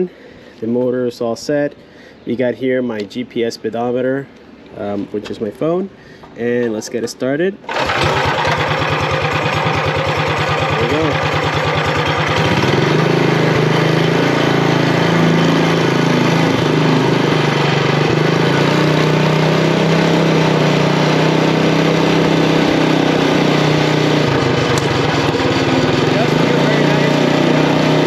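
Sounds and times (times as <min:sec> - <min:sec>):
small engine running: 0:07.7 - 0:28.0.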